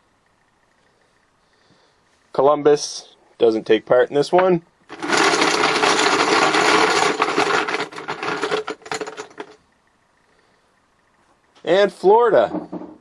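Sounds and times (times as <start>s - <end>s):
chips rattling in container: 4.9s - 9.6s.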